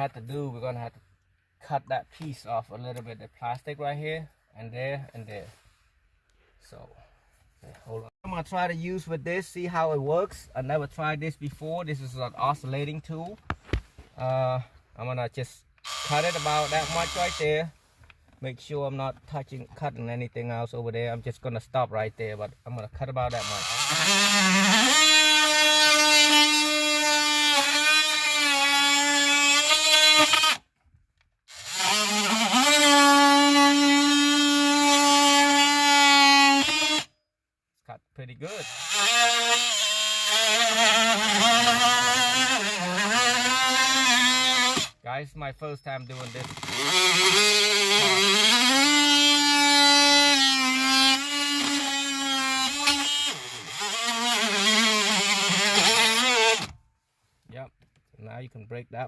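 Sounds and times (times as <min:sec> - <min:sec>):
oscillating multi-tool cutting plastic: 0:15.8 - 0:17.5, 0:23.3 - 0:30.7, 0:31.5 - 0:37.1, 0:38.5 - 0:45.0, 0:45.8 - 0:56.8.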